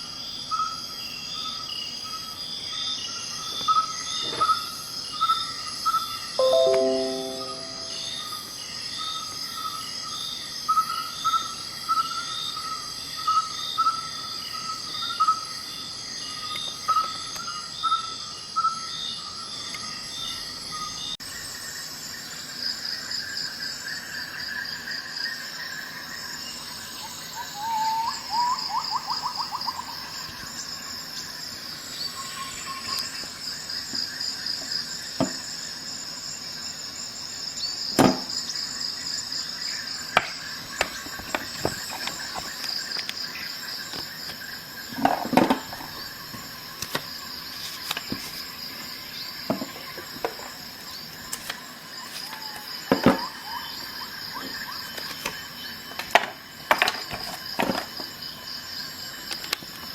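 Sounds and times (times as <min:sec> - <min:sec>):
insects chirping: 0:00.0 - 0:59.9
bird-like trill: 0:06.4 - 0:08.2.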